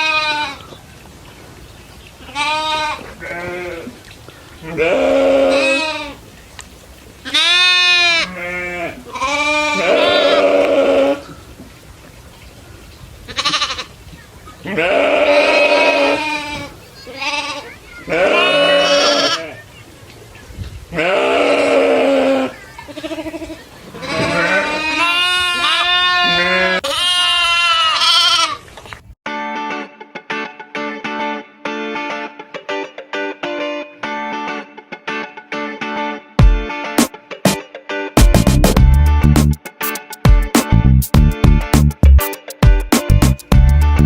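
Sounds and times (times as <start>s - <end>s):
goats bleating: 0.0s - 0.7s, 2.2s - 4.0s, 4.6s - 6.2s, 7.2s - 11.3s, 13.3s - 13.9s, 14.6s - 19.6s, 20.9s - 28.7s.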